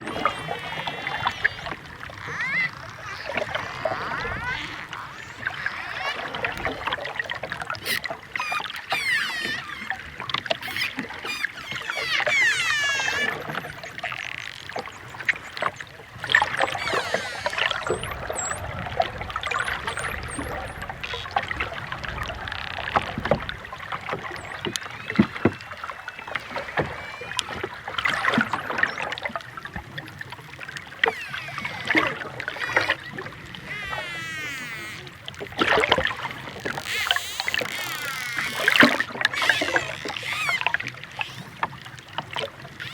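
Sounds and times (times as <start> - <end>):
dolphin chattering squeals: 0.3 - 6.8, 7.8 - 14.3, 16.4 - 18.6, 24.8 - 29.0, 30.9 - 35.2, 36.4 - 41.6
dolphin clicks: 7.7 - 18.7, 30.2 - 42.9.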